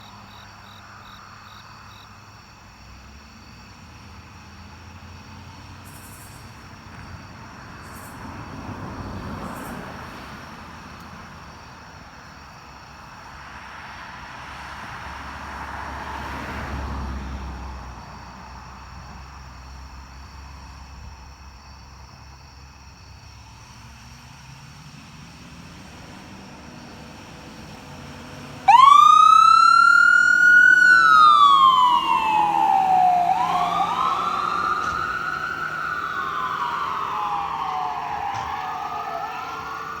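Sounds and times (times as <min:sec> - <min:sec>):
low vehicle rumble: 0:25.5 - 0:40.0
emergency siren wailing: 0:27.0 - 0:40.0.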